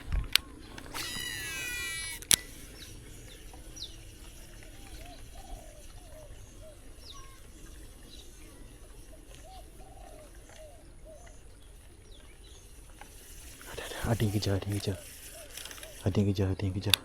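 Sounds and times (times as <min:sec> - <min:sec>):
fishing reel whirring: 0:00.0 - 0:16.5
birds chirping and calling: 0:00.0 - 0:17.0
reel click: 0:00.0 - 0:17.0.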